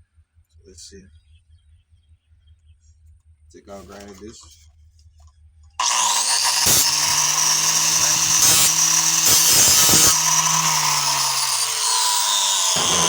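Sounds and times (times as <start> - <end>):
angle grinder whining: 5.8 - 13.0
grinder wheel biting into metal: 5.8 - 13.0.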